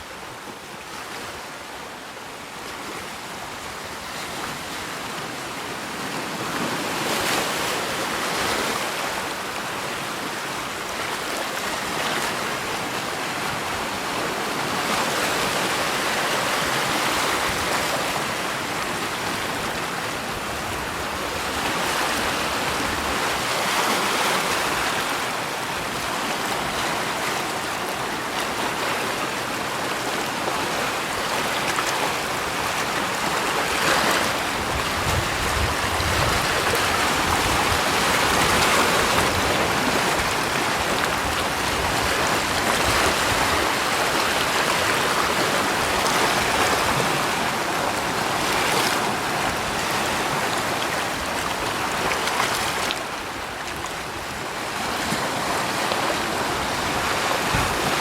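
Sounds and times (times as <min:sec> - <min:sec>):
rushing water: 0:00.0 - 0:58.0.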